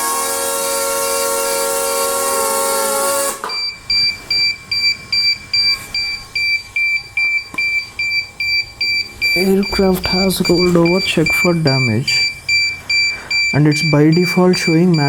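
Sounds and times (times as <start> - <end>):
rapid high-pitched warning beeps: 3.5 - 15.0.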